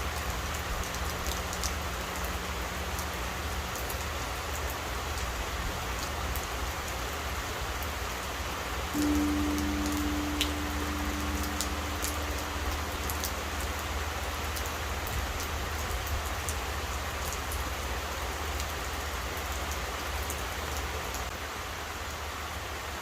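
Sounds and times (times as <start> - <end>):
steady rain: 0.0 - 23.0
temple bell humming: 9.0 - 15.8
drips ticking: 9.0 - 16.6.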